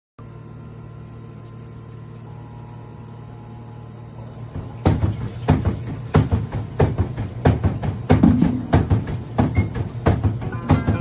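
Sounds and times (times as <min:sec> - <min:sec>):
washing machine humming: 0:00.2 - 0:11.0
loud percussion strikes: 0:10.4 - 0:11.0.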